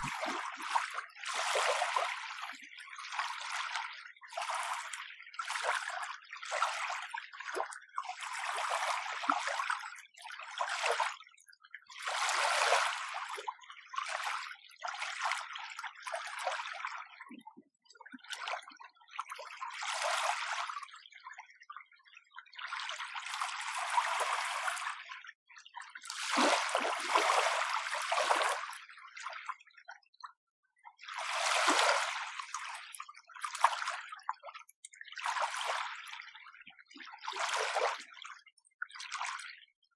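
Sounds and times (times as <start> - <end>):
small waves lapping on shore: 26.1 - 28.7.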